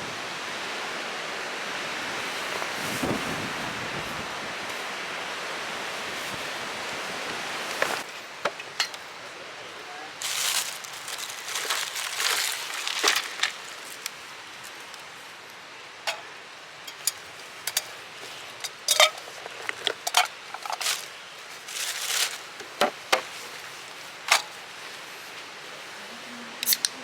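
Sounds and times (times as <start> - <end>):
steady hiss: 0.0 - 27.0
objects clicking and clinking: 18.6 - 21.1.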